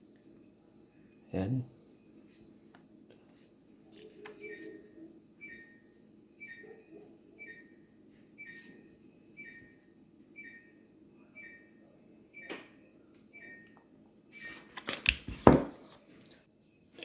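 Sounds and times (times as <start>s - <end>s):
fridge door alarm beeping: 4.1s - 14.7s.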